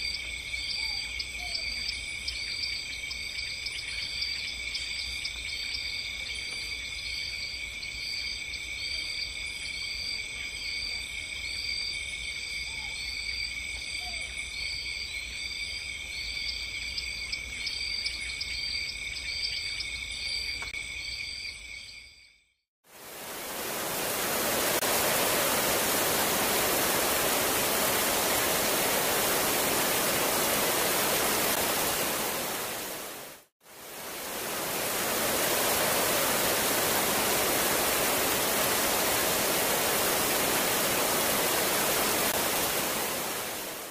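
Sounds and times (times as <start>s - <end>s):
rush of water: 22.8s - 43.9s.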